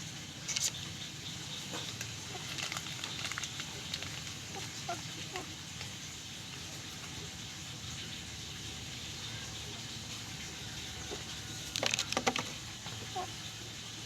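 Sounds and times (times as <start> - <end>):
scattered clicks and crackling: 1.8 - 4.4.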